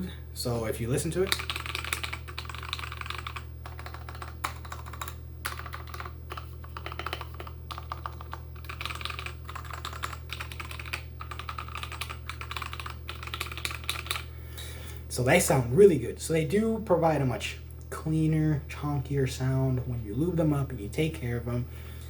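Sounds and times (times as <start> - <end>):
mechanical keyboard typing: 1.2 - 14.3.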